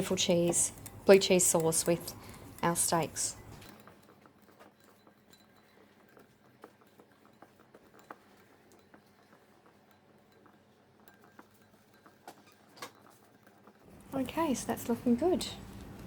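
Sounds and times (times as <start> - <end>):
whisk clicking against a bowl: 0.0 - 16.0.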